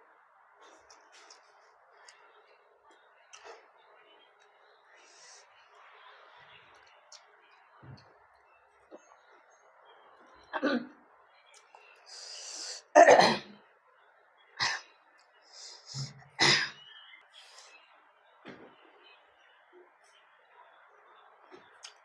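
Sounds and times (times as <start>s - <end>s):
person coughing: 13.0s - 13.5s, 15.9s - 16.8s.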